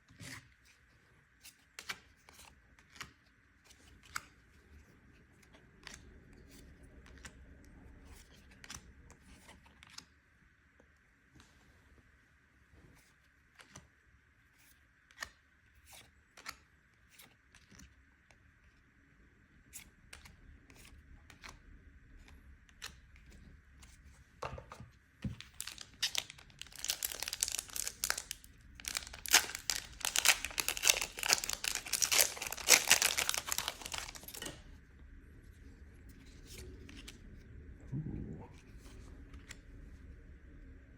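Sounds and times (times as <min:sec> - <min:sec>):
trading cards being handled: 0:25.3 - 0:34.6
foil wrapper tearing and crinkling: 0:25.5 - 0:34.6.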